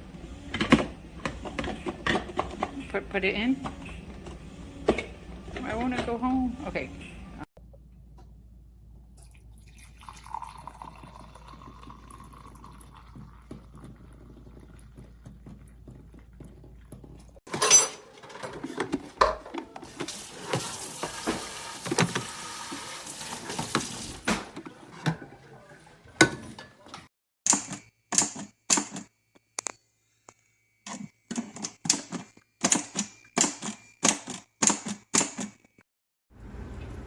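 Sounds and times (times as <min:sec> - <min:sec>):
knocks and clatter of handling: 0:00.5 - 0:02.9, 0:15.0 - 0:22.3, 0:23.5 - 0:27.1
water running and splashing: 0:19.8 - 0:27.0.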